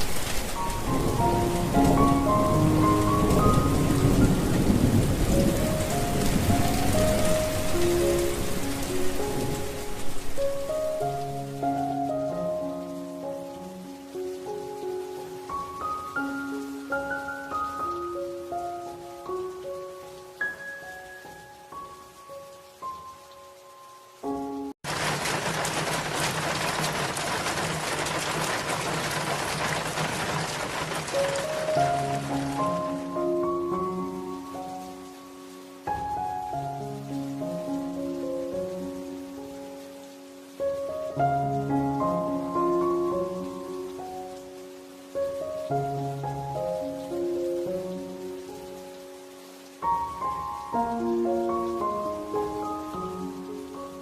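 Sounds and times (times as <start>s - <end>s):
low rolling thunder: 0.0s - 9.4s
falling water rushing: 0.0s - 54.0s
heavy rain: 0.0s - 54.0s
soft slow background music: 0.1s - 24.7s, 31.8s - 54.0s.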